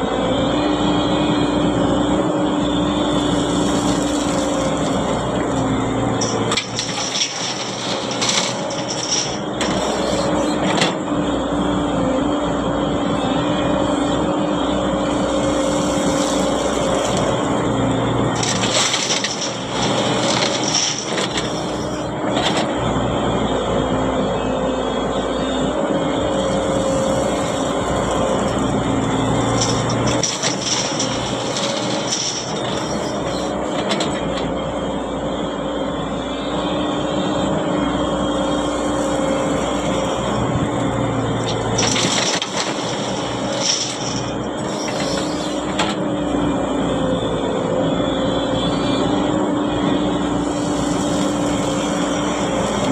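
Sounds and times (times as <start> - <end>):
excavator diesel engine running: 0.0 - 52.9
excavator bucket crunching: 3.8 - 10.8, 18.3 - 22.6, 27.2 - 34.3, 39.7 - 46.0.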